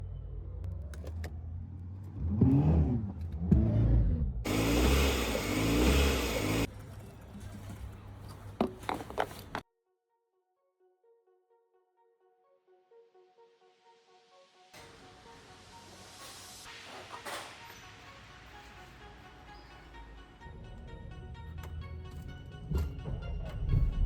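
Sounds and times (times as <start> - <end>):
diesel engine revving: 1.4 - 6.7.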